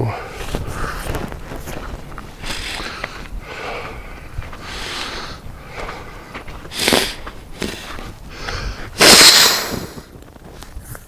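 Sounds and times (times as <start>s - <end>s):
man blowing nose: 2.4s - 3.0s, 6.7s - 10.1s
man snorting: 2.4s - 10.1s.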